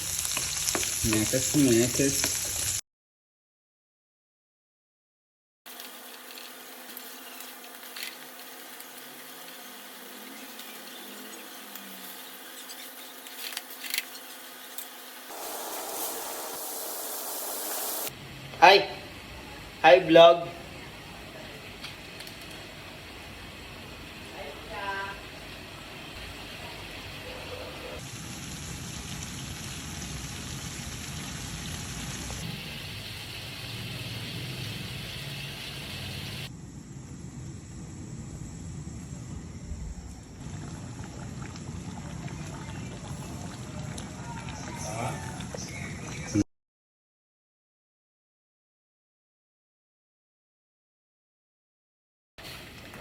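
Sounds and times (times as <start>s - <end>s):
oil sizzling in a pan: 0.0s - 2.8s, 5.8s - 13.2s, 14.2s - 18.1s, 22.5s - 27.2s, 28.0s - 36.5s.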